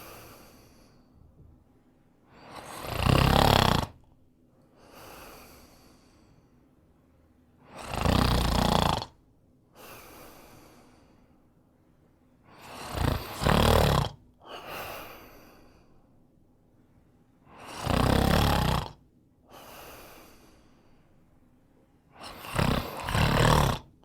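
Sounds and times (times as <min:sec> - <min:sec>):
soft breath out: 0:00.0 - 0:01.4, 0:04.6 - 0:06.8, 0:09.7 - 0:11.6, 0:19.5 - 0:21.5
man snoring: 0:02.4 - 0:04.1, 0:07.6 - 0:09.2, 0:12.6 - 0:14.2, 0:17.5 - 0:19.0, 0:22.2 - 0:24.0.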